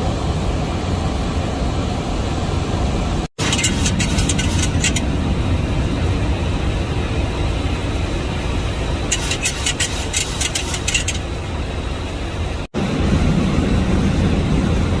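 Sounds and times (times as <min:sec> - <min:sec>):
airflow and engine noise: 0:00.0 - 0:15.0
rapid crackling clicks: 0:03.4 - 0:05.0, 0:09.1 - 0:11.3.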